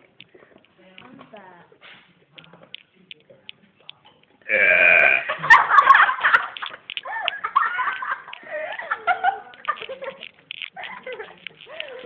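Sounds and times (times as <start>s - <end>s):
person burping loudly: 4.5s - 5.6s.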